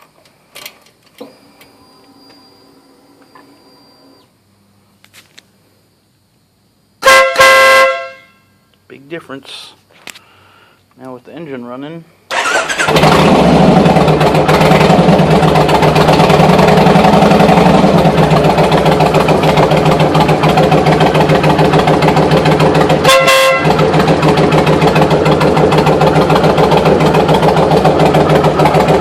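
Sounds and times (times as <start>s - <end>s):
air horn blast: 7.0s - 8.5s, 23.0s - 23.9s
motorcycle engine running: 12.3s - 29.0s.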